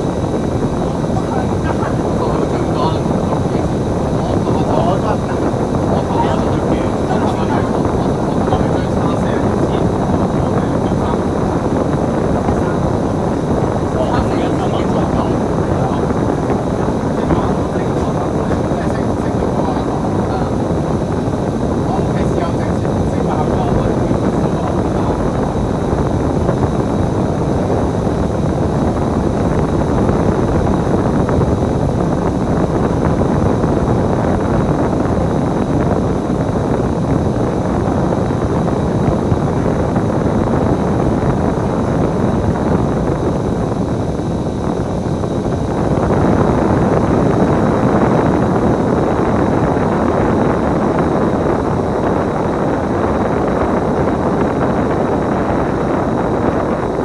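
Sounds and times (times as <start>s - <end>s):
bus engine and road rumble: 0.0s - 35.6s.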